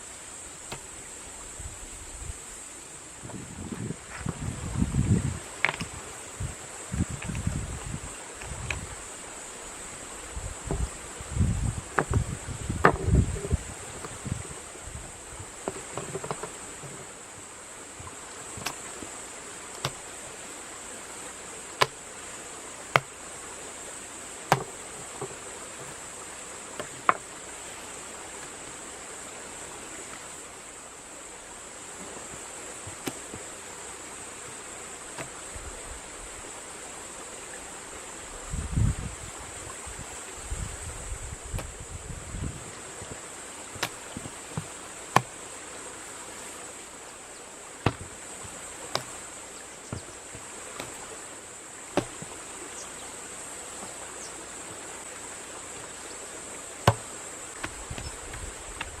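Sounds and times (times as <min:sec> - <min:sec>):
high-pitched insect trill: 0:00.0 - 0:59.0
sharp single knocks: 0:19.7 - 0:20.0, 0:21.8 - 0:22.0, 0:22.9 - 0:23.2, 0:24.5 - 0:25.4, 0:43.8 - 0:45.4, 0:47.8 - 0:48.2, 0:48.9 - 0:49.2, 0:51.9 - 0:52.4, 0:56.8 - 0:59.0.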